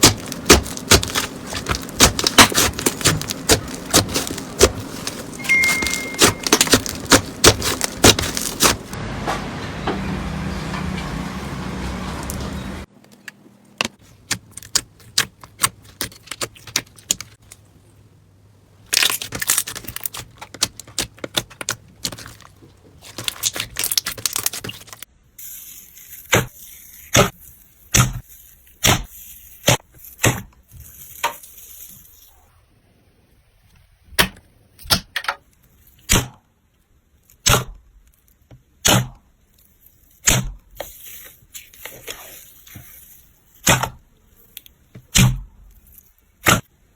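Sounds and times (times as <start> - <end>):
slime crackling and popping: 0.0 - 9.0, 18.8 - 32.3.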